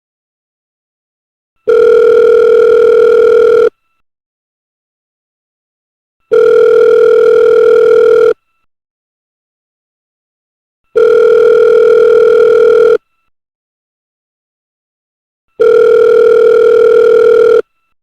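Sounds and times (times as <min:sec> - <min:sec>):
telephone ringing: 0:01.7 - 0:03.7, 0:06.3 - 0:08.4, 0:11.0 - 0:13.0, 0:15.6 - 0:17.7.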